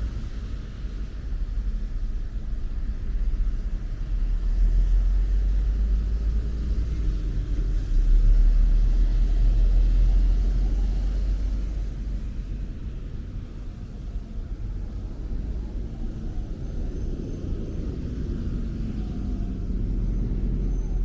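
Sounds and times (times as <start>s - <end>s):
road traffic rumble: 0.0s - 21.0s.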